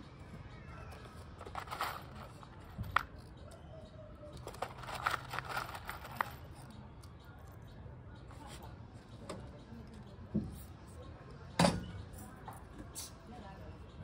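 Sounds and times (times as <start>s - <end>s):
hands handling parts clicking: 1.1s - 3.5s, 4.3s - 7.6s.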